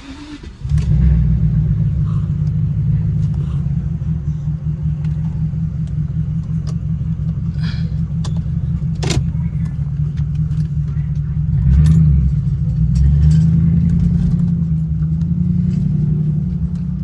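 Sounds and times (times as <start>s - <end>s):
car engine running steadily: 0.0s - 17.0s.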